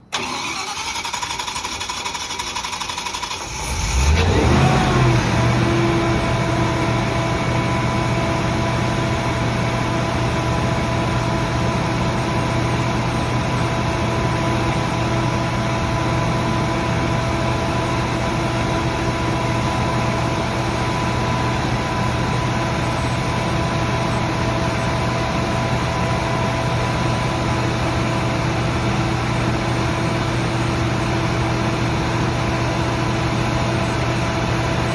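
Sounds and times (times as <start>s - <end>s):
generator starter cranking: 0.0s - 4.8s
generator engine running: 0.0s - 34.9s.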